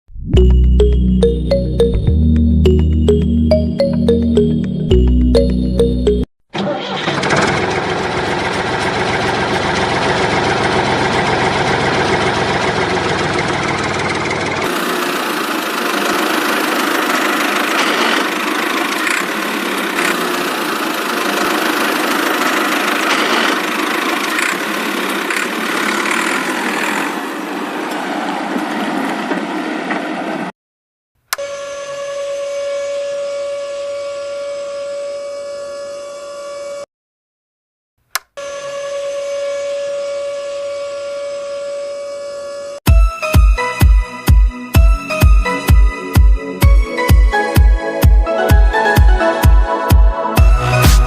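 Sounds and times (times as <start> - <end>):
engine running: 0.4 - 30.5.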